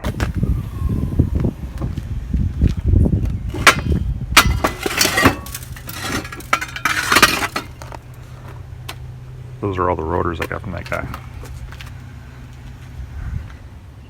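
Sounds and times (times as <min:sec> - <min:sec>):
low steady hum: 0:00.0 - 0:14.0
metal brake rotors clanking: 0:03.2 - 0:09.6.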